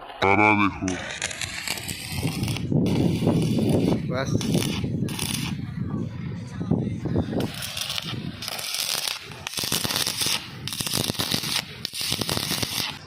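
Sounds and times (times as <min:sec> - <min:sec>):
welding arc crackling: 0:00.9 - 0:05.6, 0:07.4 - 0:13.0.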